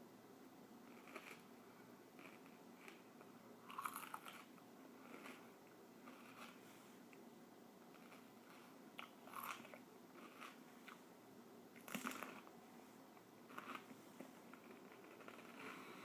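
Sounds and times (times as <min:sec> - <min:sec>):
crunchy chewing: 0:00.9 - 0:01.5, 0:02.2 - 0:06.6, 0:07.9 - 0:11.0, 0:11.8 - 0:12.5, 0:13.4 - 0:16.0.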